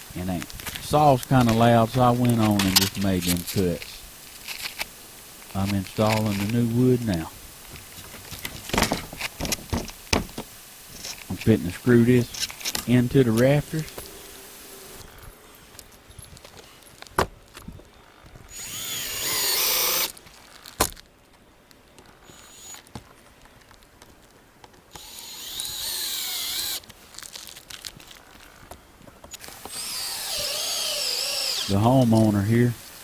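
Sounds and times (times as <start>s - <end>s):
power drill driving screws: 18.5s - 20.2s, 22.2s - 22.8s, 24.9s - 26.8s, 29.3s - 32.2s.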